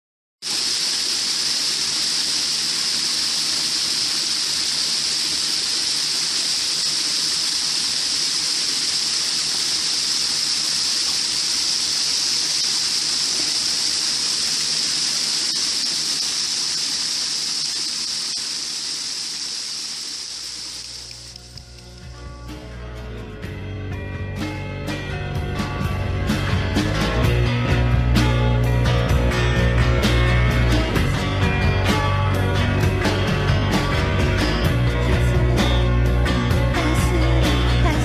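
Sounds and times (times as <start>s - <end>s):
waterfall rushing: 0.4s - 21.6s.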